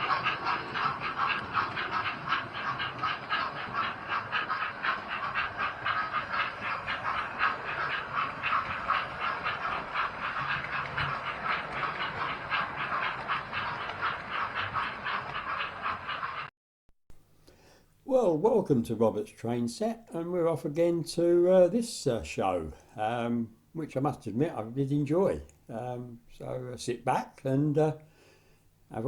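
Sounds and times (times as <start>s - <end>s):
steam locomotive chuffing: 0.0s - 16.5s.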